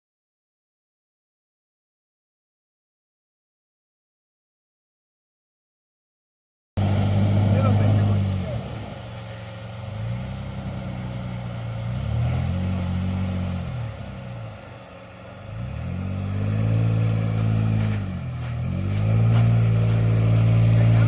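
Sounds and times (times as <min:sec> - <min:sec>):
truck engine revving: 0:06.8 - 0:21.0.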